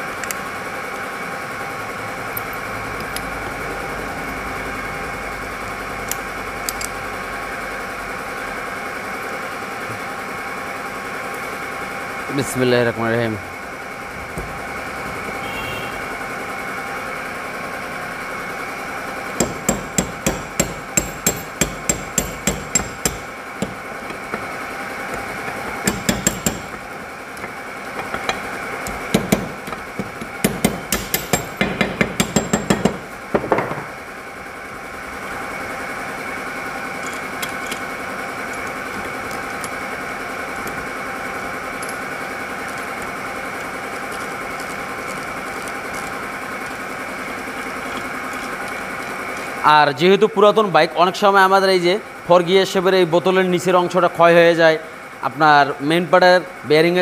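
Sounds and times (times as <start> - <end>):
hammer tapping on metal parts: 19.4 - 33.9.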